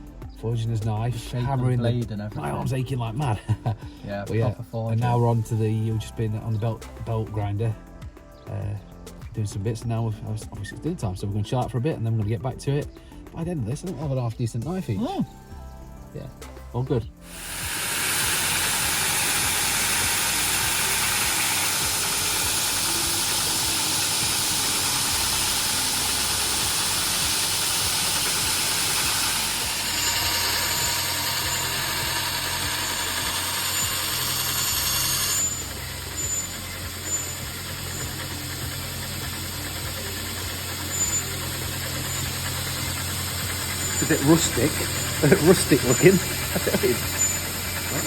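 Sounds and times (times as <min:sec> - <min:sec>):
workshop machinery hissing: 0:16.2 - 0:48.0.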